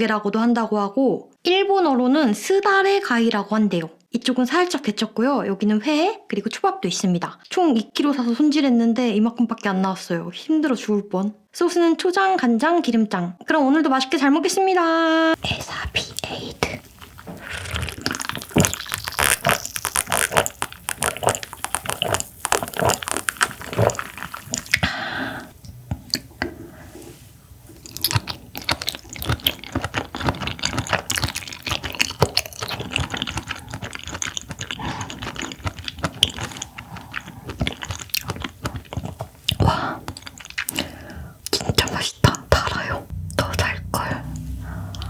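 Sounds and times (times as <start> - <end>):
wet crunchy chewing: 15.4 - 26.6, 27.6 - 45.0.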